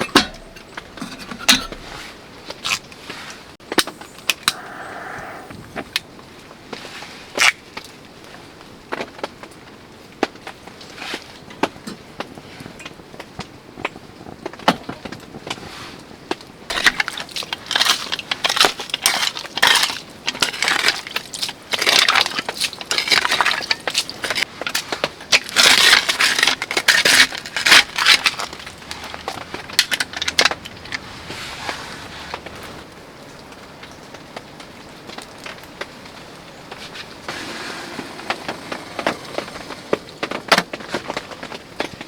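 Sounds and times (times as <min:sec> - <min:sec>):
dense crackling and crunching: 0:16.7 - 0:32.9, 0:34.3 - 0:42.0.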